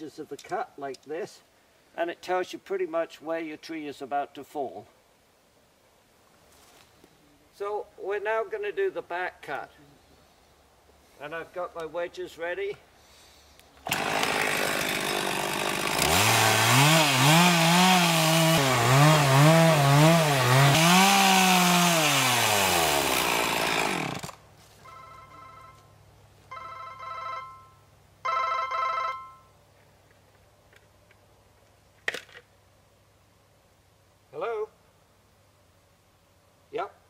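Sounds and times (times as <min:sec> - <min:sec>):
chainsaw cutting: 0:13.8 - 0:24.4
phone ringtone: 0:24.8 - 0:25.9, 0:26.5 - 0:29.5.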